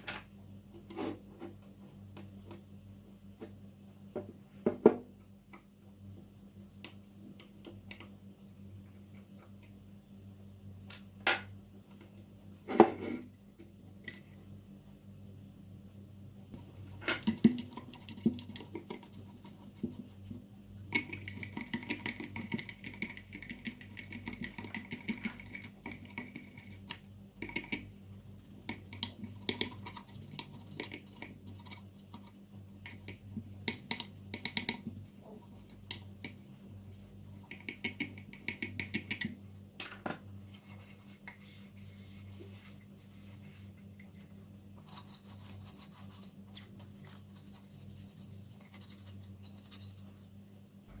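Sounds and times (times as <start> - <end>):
faint steady hum: 0.0 - 51.0
scratching and brushing strokes: 24.3 - 38.7, 40.4 - 50.4.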